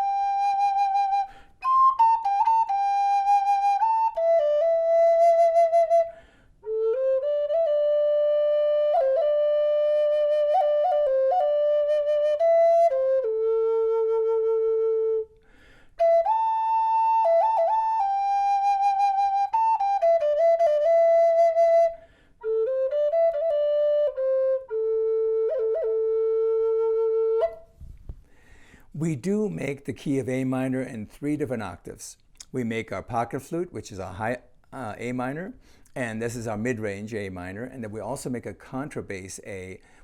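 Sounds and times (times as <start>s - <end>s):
flute playing slow melody: 0.0s - 15.4s, 16.0s - 27.9s.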